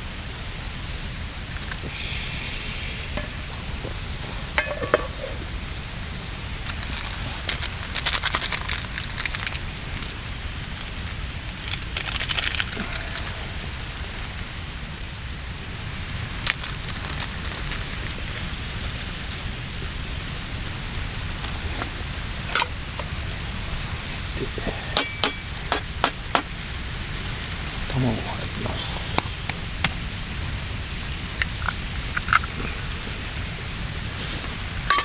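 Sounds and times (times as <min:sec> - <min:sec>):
food sizzling over campfire: 0:00.0 - 0:35.0
metal clinks: 0:24.9 - 0:26.0.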